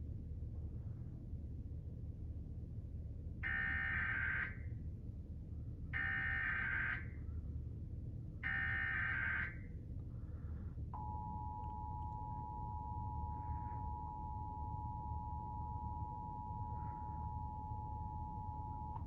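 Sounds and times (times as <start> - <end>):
two-tone attention signal: 11.0 - 19.0.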